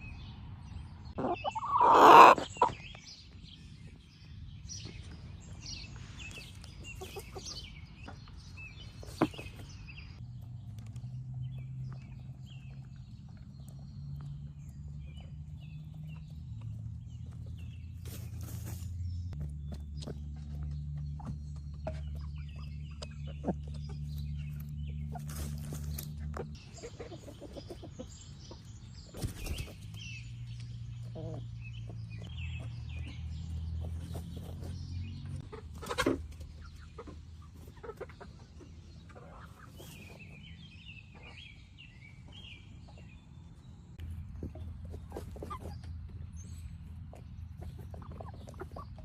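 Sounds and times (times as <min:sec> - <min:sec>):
chicks chirping and clucking: 0:00.0 - 0:49.0.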